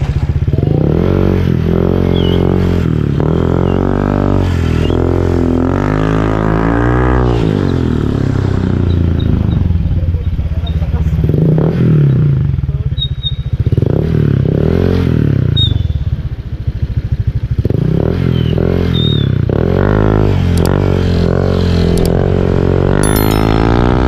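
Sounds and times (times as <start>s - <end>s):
scooter engine revving: 13.5s - 24.0s.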